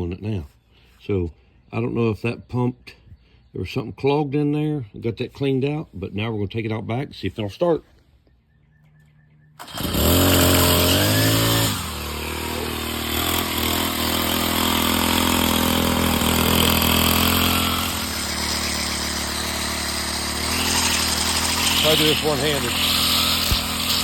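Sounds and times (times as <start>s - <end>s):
string trimmer engine revving: 9.6s - 24.0s.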